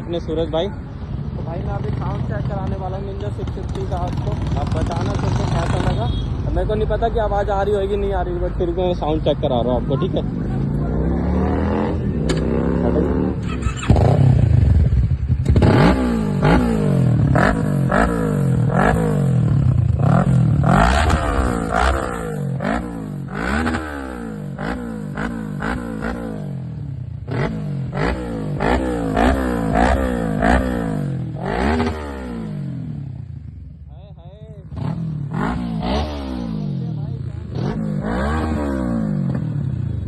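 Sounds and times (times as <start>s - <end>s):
motorcycle engine revving: 0.0s - 40.0s.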